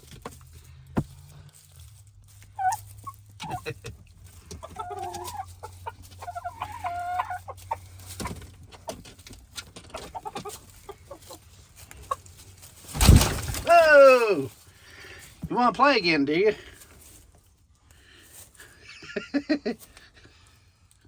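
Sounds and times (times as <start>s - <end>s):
chickens clucking: 2.2s - 13.6s
short pitched calls: 2.5s - 3.6s.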